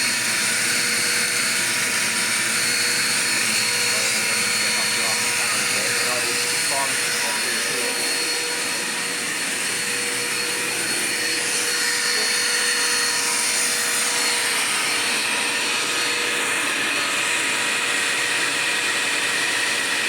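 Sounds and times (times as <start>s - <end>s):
vacuum cleaner running: 0.0s - 20.0s.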